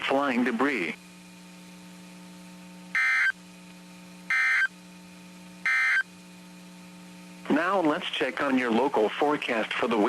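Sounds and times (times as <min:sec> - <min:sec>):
steady low hum: 0:00.0 - 0:10.0
buzzy two-tone data bursts: 0:02.9 - 0:03.4, 0:04.3 - 0:04.8, 0:05.6 - 0:06.1.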